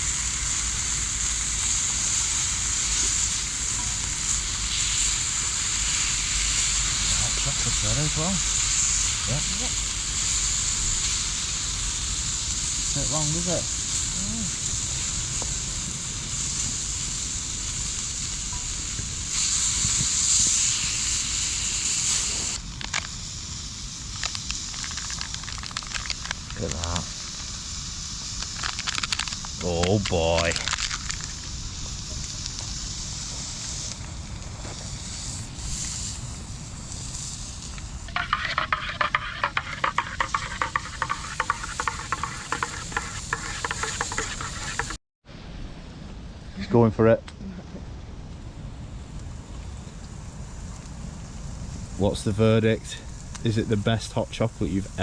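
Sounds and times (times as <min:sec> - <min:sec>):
burning wood crackling: 0:00.0 - 0:45.0
food sizzling in a skillet: 0:00.0 - 0:45.0
spoon stirring in a cup: 0:38.1 - 0:45.0.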